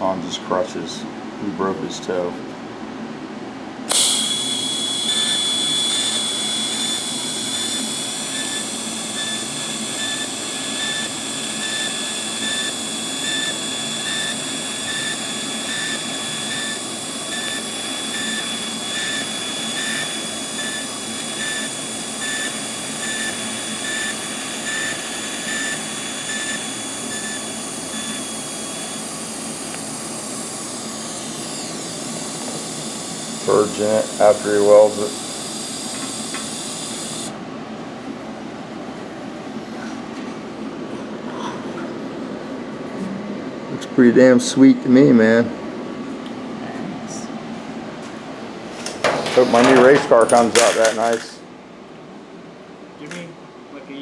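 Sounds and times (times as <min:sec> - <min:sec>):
welding arc buzzing: 0:03.9 - 0:37.5, 0:48.6 - 0:51.4.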